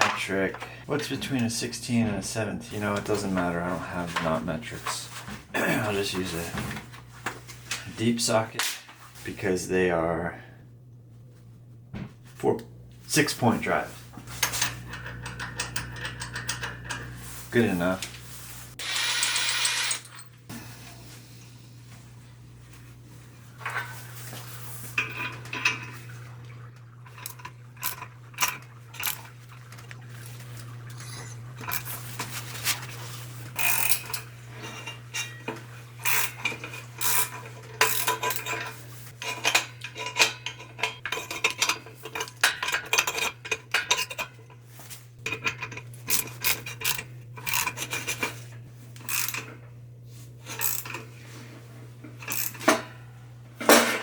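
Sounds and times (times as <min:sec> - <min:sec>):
low hum: 0:09.0 - 0:18.8, 0:20.0 - 0:36.7
metal tools clinking: 0:13.0 - 0:18.2, 0:18.8 - 0:20.4, 0:25.0 - 0:49.7, 0:50.4 - 0:51.1, 0:52.1 - 0:53.0.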